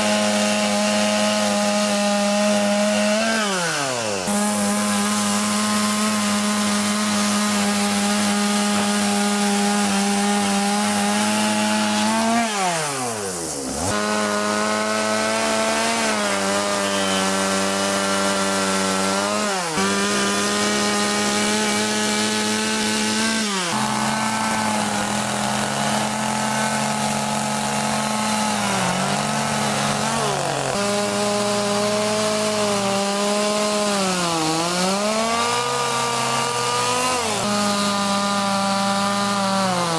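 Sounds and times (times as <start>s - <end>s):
chainsaw carving wood: 0.0s - 39.9s.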